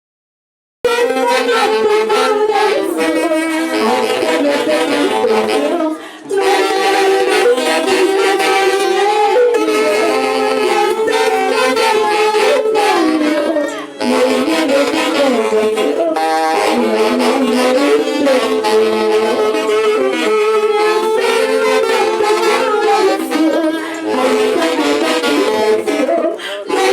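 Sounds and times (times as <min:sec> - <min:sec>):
wind instrument lead: 0:00.9 - 0:26.9
orchestra playing traditional melody: 0:06.4 - 0:26.0.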